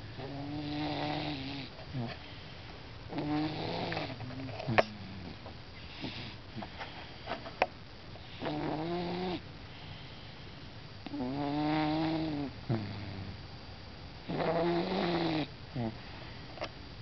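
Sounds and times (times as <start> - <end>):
cat snoring: 0.2 - 2.1, 3.1 - 6.7, 8.2 - 9.9, 11.0 - 13.4, 14.2 - 16.0.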